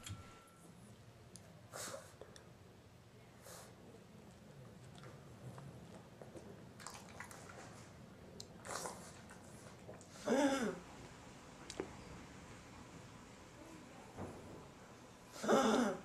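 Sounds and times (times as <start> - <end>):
dog coughing: 15.4 - 16.0.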